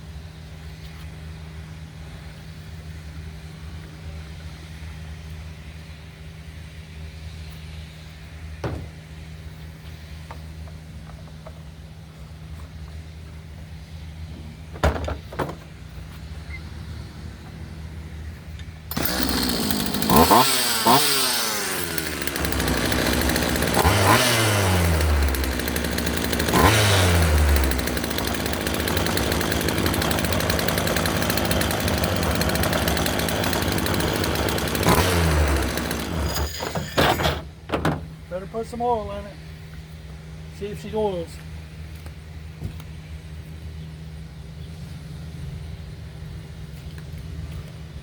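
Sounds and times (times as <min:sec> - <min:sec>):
chainsaw engine revving: 0:18.9 - 0:37.6.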